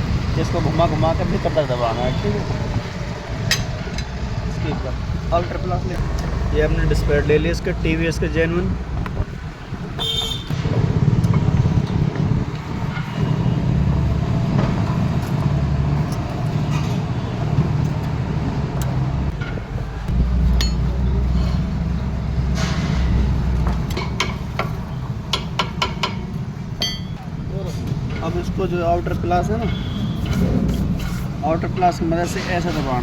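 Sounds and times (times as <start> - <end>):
steady low rumble: 2.6 - 16.3
metal brake parts clinking: 26.8 - 27.2.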